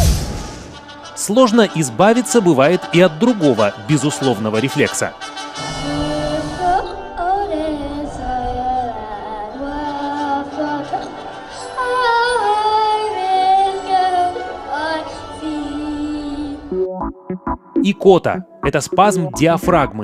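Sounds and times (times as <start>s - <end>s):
music: 0.0s - 20.0s
woman singing long held notes: 5.6s - 16.7s.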